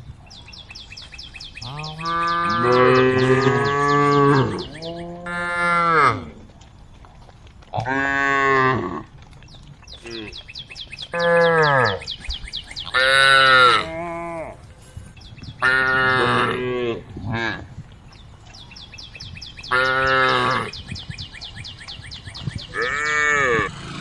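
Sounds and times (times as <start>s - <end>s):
cows mooing: 1.6s - 6.4s, 11.1s - 12.1s, 12.8s - 14.6s, 15.6s - 17.7s, 19.6s - 20.8s, 22.7s - 24.0s.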